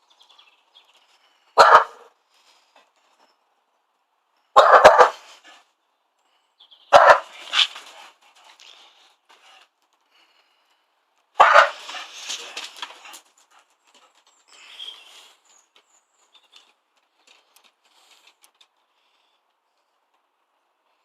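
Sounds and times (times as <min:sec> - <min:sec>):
dog scuffling and thrashing: 0:07.1 - 0:09.7, 0:11.4 - 0:14.5.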